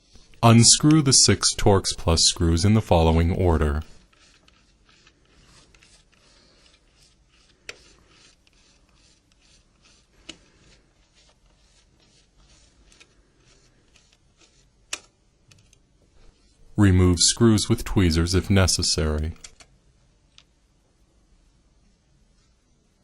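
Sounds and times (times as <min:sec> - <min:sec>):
screwdriver bit scratching: 0:04.0 - 0:14.7.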